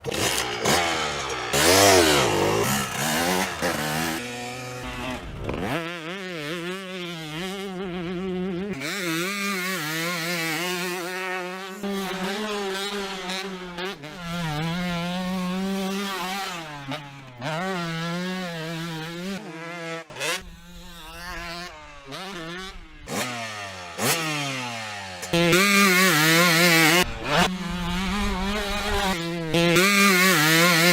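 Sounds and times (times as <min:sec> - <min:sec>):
dirt bike engine revving: 0:00.0 - 0:30.9.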